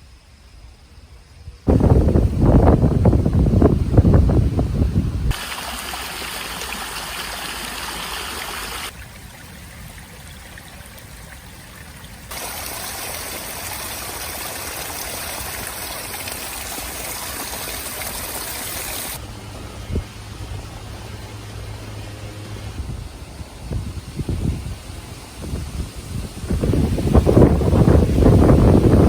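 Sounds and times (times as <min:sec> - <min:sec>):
stream water rushing: 0:05.3 - 0:24.3, 0:26.4 - 0:29.0.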